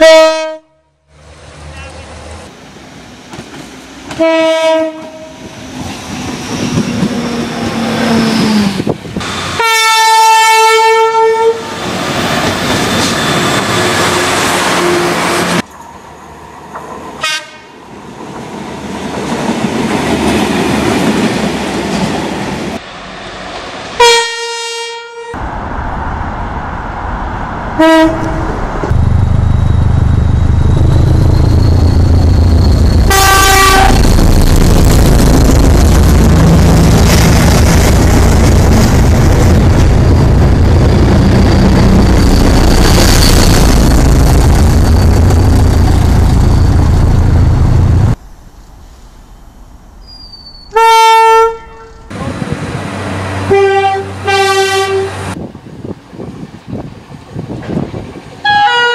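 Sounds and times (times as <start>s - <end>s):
train horn blasts: 0.0s - 1.0s, 4.1s - 5.4s, 9.6s - 11.8s, 17.2s - 17.7s, 24.0s - 25.4s, 27.8s - 28.4s, 33.1s - 34.0s, 50.7s - 52.1s, 53.5s - 55.4s, 58.4s - 58.9s
train passing with low rumble: 0.0s - 58.9s.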